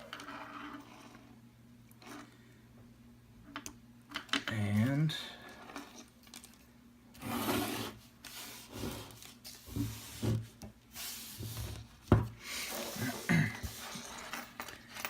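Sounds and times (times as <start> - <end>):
rustling of parts and wires: 4.2 - 15.0.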